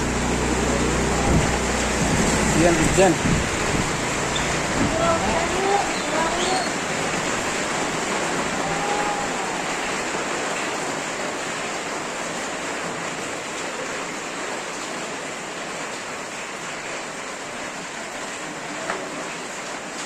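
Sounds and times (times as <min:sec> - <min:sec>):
rain falling steadily: 0:00.0 - 0:20.0.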